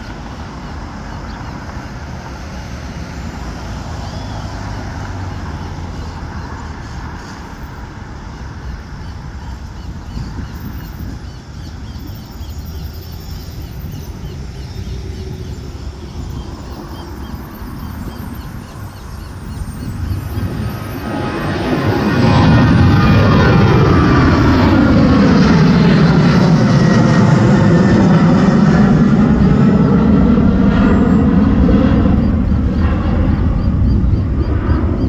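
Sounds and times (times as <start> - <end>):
distant jet engine rumble: 0.0 - 35.0
wind noise: 8.6 - 35.0.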